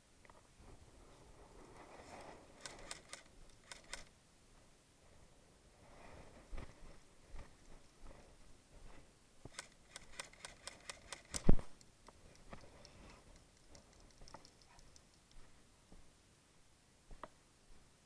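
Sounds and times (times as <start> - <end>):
faint clicks: 2.6 - 4.1, 9.5 - 15.5.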